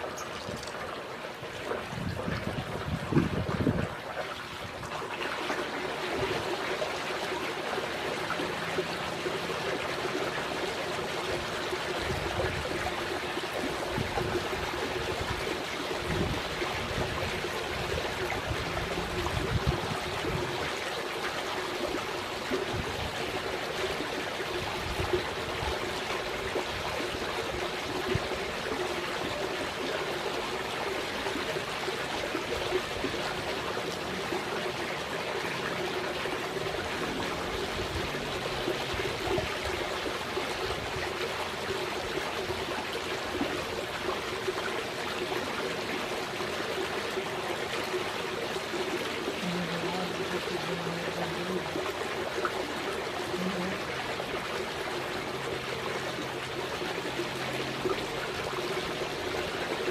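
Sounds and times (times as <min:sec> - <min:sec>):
trickling running water: 0:00.0 - 0:59.9
wind rumbling on microphone: 0:00.1 - 0:05.1, 0:11.4 - 0:20.8, 0:22.5 - 0:23.5, 0:24.5 - 0:28.8.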